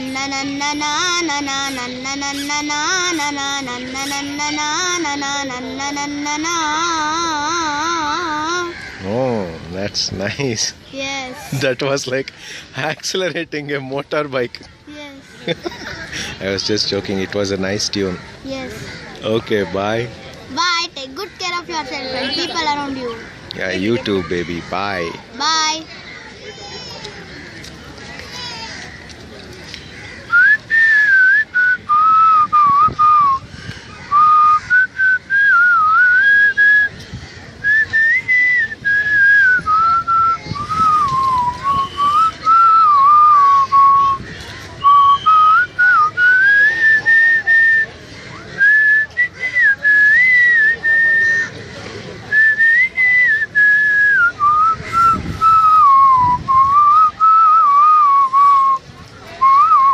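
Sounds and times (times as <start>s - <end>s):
person whistling a tune: 30.3s - 33.4s, 52.4s - 58.8s, 59.4s - 59.9s.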